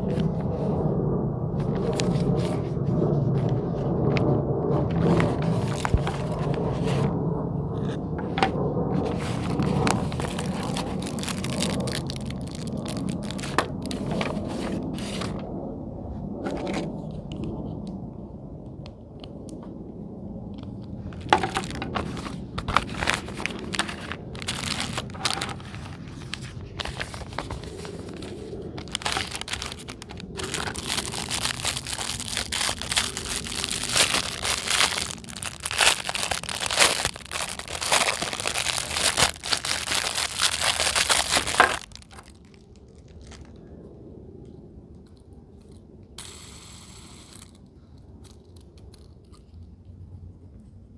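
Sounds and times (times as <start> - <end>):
plastic packaging crinkling: 5.1 - 6.6, 9.1 - 15.4, 20.8 - 43.6.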